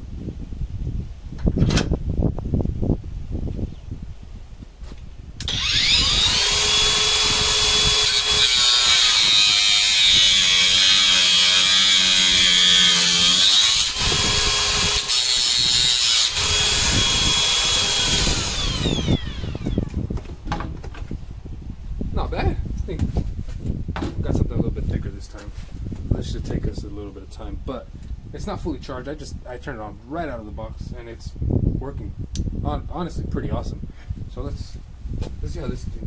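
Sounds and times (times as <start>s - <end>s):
angle grinder cutting bolt: 5.4s - 20.0s
angle grinder whine: 5.4s - 20.1s.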